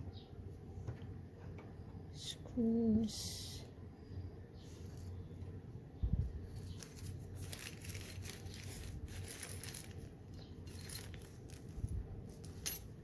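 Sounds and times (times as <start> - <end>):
plastic packaging crinkling: 6.5 - 11.9.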